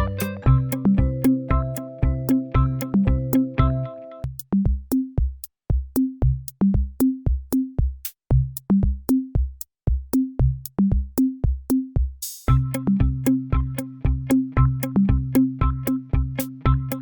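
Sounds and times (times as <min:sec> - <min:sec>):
plucked bass notes: 0:00.0 - 0:04.4, 0:12.5 - 0:17.0
drum machine kick drums: 0:00.0 - 0:17.0.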